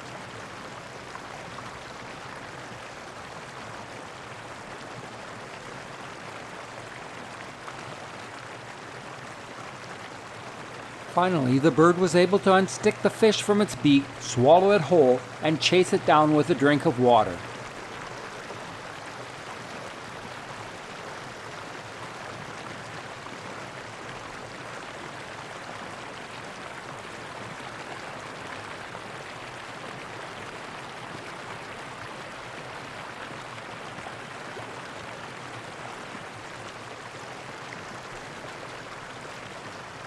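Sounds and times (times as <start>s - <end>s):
flowing water rushing: 0.0s - 40.0s.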